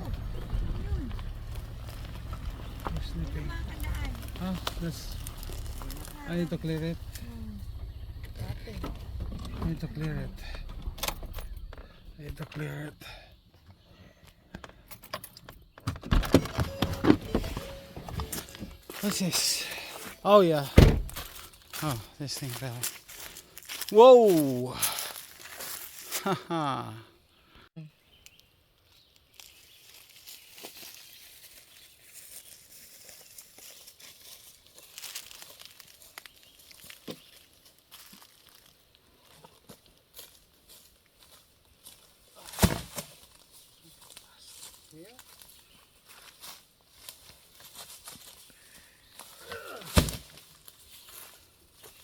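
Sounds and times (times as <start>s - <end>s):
dry vegetation rustling: 0.0s - 9.2s, 21.0s - 26.2s, 28.3s - 49.4s, 50.0s - 52.0s.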